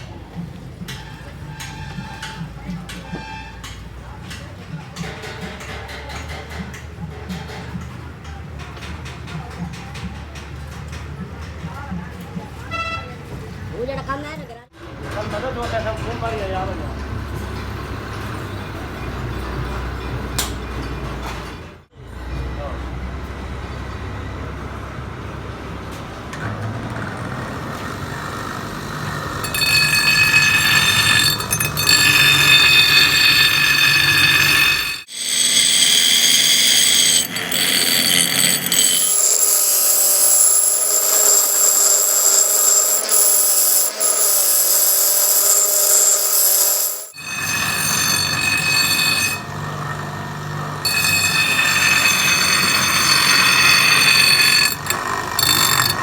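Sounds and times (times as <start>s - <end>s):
power grinder whining: 27.0s - 56.0s.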